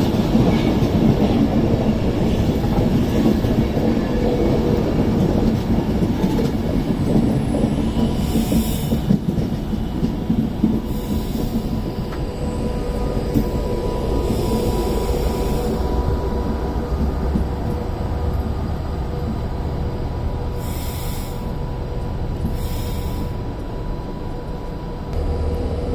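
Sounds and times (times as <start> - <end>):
electric train wheels rumbling: 0.0 - 25.9.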